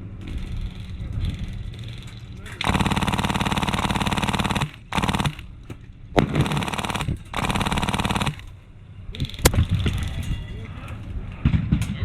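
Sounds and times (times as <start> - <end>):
airsoft gun firing bursts: 2.6 - 5.6, 6.2 - 8.6.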